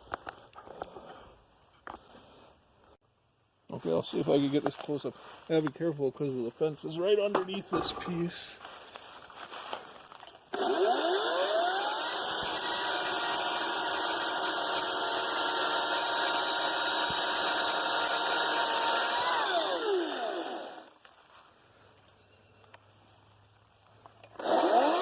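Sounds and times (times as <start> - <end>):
electric chainsaw running: 10.5 - 21.0, 24.4 - 25.0.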